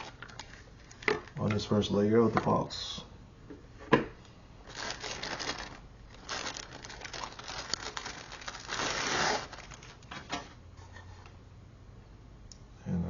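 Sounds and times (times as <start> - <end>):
packaging crinkling: 0.0 - 1.6, 4.6 - 10.6.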